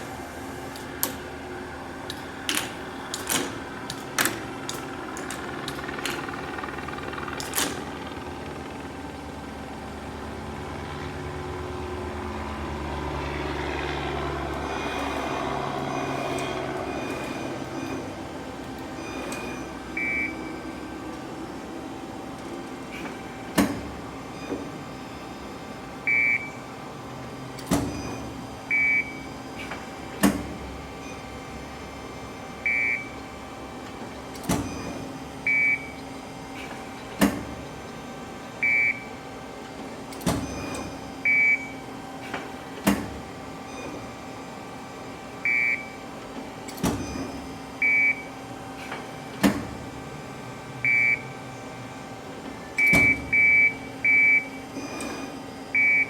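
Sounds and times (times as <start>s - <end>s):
hydraulic pump hum: 0.0s - 12.9s
machine clunk: 2.0s - 7.9s, 33.8s - 35.1s, 36.6s - 37.7s, 42.2s - 44.0s, 48.8s - 49.9s, 52.4s - 53.4s
short electronic beeps: 52.8s - 55.1s.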